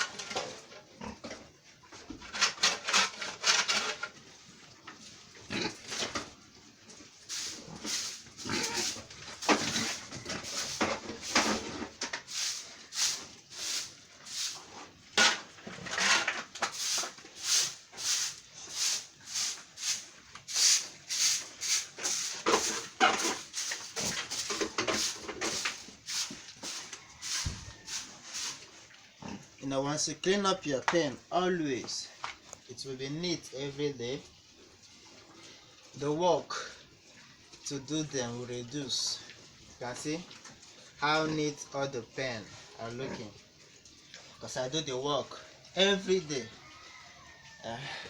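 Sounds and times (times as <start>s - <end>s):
pigs chewing: 0.0s - 15.8s, 16.6s - 29.6s, 38.8s - 47.2s.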